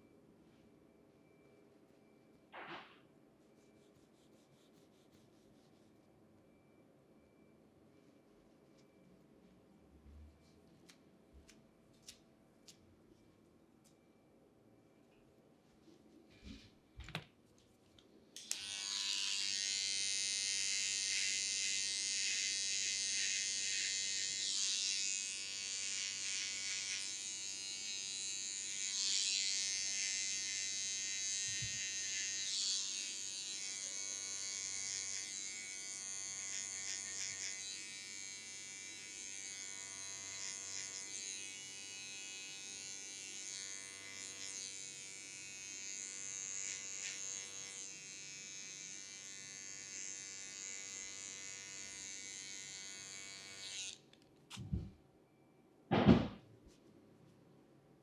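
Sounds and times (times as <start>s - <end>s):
electric hair clippers buzzing: 18.4s - 54.0s.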